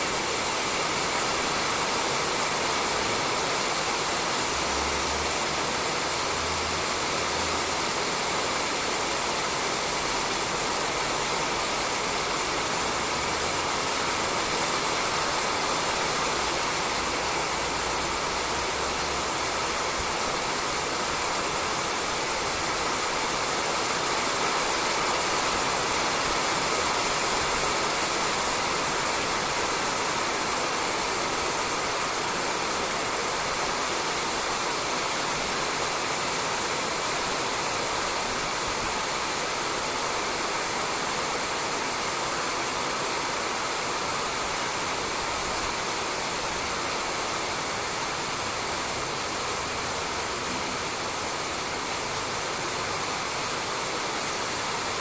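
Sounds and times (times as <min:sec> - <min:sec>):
rain on a roof: 0:00.0 - 0:55.0.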